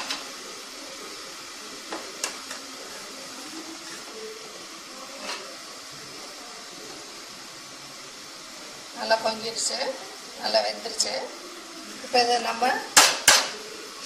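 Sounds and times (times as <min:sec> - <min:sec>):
pot boiling hiss: 0:00.0 - 0:14.0.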